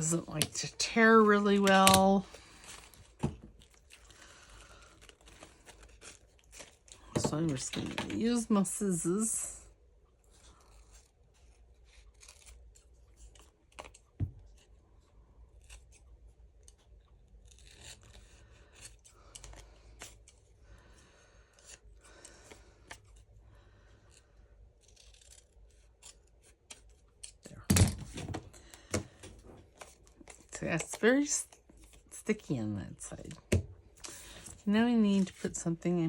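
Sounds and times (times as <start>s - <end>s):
scissors snipping paper: 24.8s - 27.5s.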